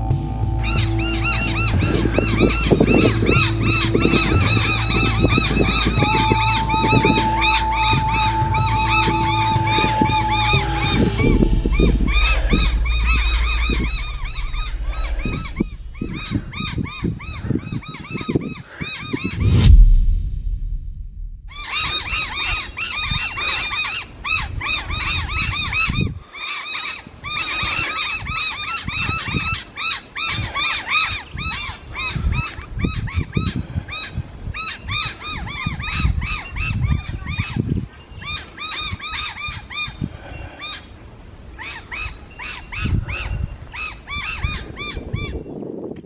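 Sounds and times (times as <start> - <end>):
low irregular rumbling: 0.0 - 17.3, 19.3 - 23.2.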